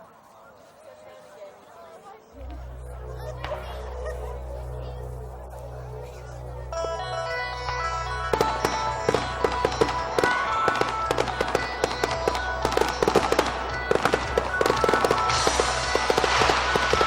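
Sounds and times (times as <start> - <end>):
music playing: 2.4 - 17.0
fireworks bursting and crackling: 8.2 - 17.0.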